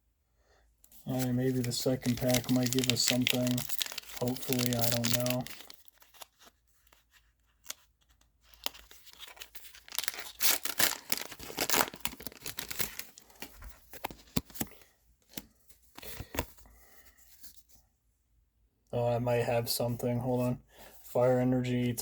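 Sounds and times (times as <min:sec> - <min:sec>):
foil wrapper tearing and crinkling: 0:01.1 - 0:06.5, 0:07.6 - 0:14.7.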